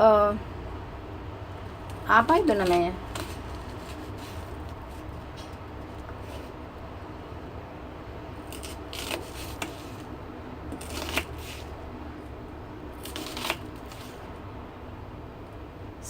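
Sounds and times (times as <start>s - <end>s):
knife slicing onion: 8.4s - 10.1s, 10.7s - 11.7s, 13.0s - 14.2s.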